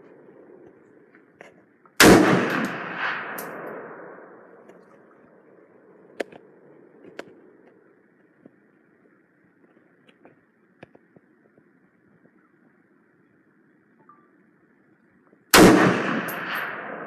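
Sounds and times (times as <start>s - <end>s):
gunshot with echo: 2.0s - 4.1s, 15.5s - 17.0s.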